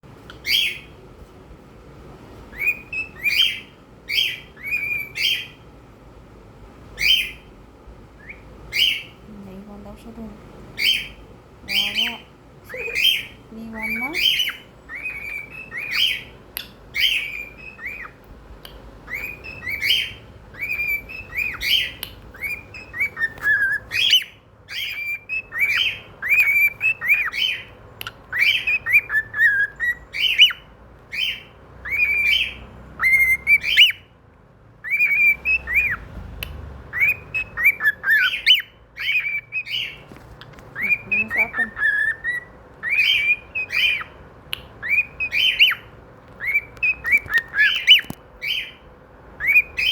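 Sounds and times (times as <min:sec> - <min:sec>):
cockatiel whistled chirps: 0:02.5 - 0:05.6, 0:13.9 - 0:18.2, 0:19.1 - 0:34.1, 0:34.8 - 0:36.0, 0:36.9 - 0:40.0, 0:40.8 - 0:48.8, 0:49.4 - 0:49.9.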